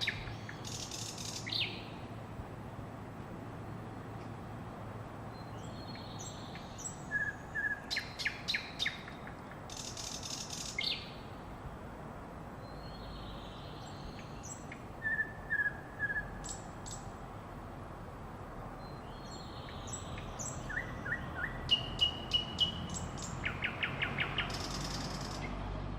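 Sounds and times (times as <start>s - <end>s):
low background noise: 0.0s - 25.9s
songbird singing: 0.0s - 25.9s.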